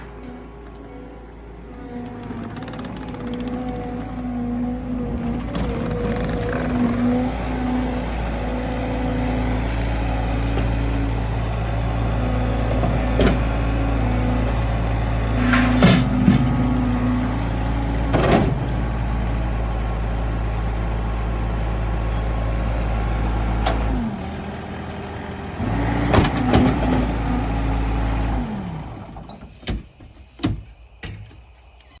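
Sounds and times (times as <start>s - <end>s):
skid steer engine humming: 0.0s - 32.0s
sharp knocks and clicks: 29.2s - 32.0s.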